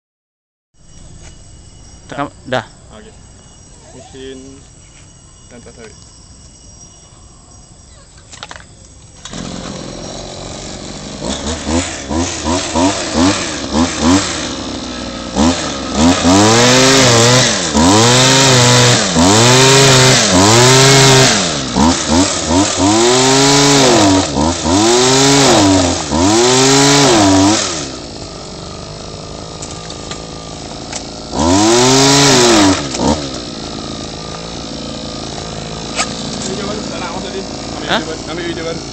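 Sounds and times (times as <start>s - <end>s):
small two-stroke engine revving: 9.2s - 38.9s.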